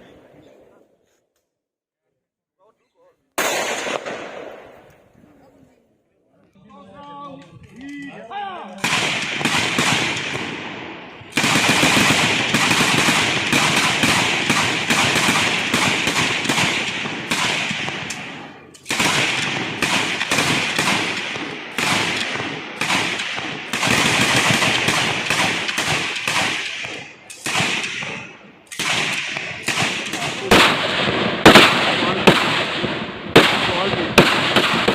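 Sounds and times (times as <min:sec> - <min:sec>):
rapid gunfire with echo: 0:03.4 - 0:04.8, 0:08.8 - 0:34.9.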